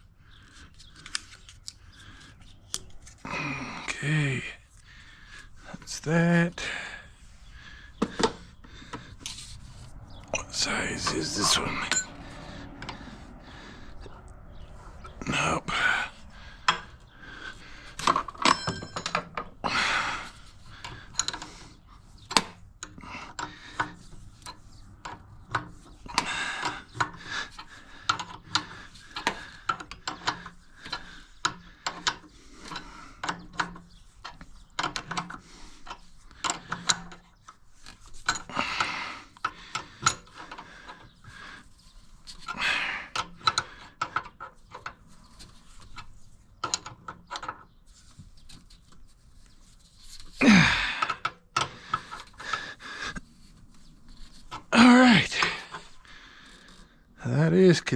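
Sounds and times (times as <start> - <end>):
rattling clatters: 16.6 - 19.6.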